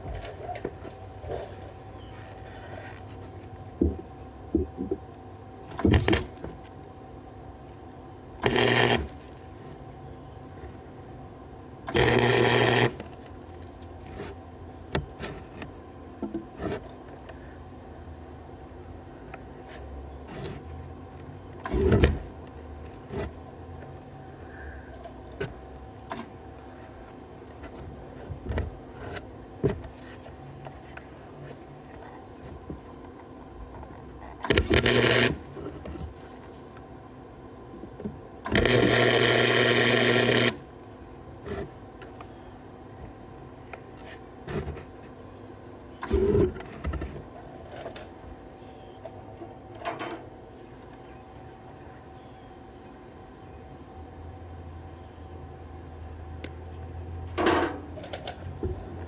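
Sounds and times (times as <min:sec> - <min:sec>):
welding arc crackling and buzzing: 0:08.4 - 0:09.3, 0:11.9 - 0:13.2, 0:34.5 - 0:36.7, 0:38.5 - 0:40.7
welder humming: 0:08.4 - 0:09.7, 0:11.9 - 0:13.3, 0:34.4 - 0:36.8, 0:38.5 - 0:40.7.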